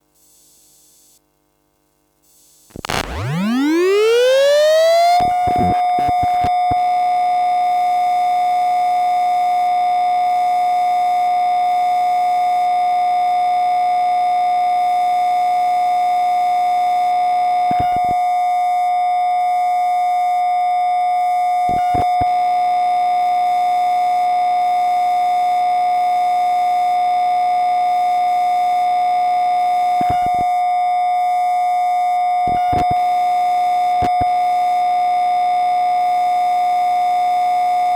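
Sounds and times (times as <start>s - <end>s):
synthetic rising tone: 2.9s - 6.4s.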